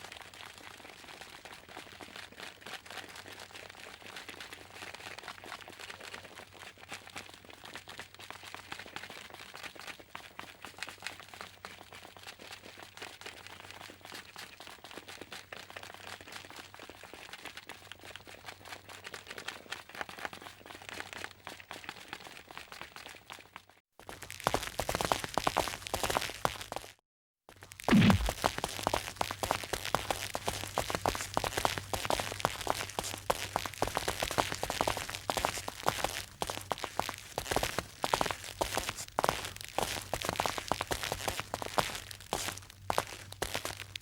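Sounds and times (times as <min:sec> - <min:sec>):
footsteps crunching: 0:27.6 - 0:44.0.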